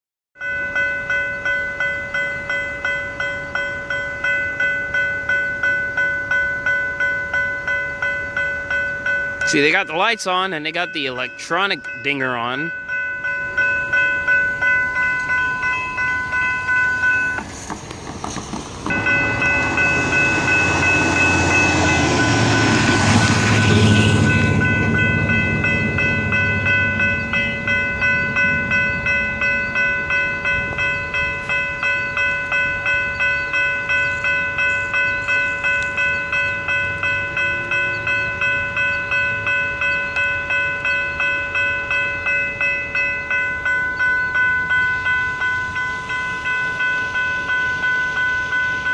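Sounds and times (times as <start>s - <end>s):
crossing bell ringing: 0.4s - 48.9s
rushing rumbling pass-by: 17.4s - 30.7s.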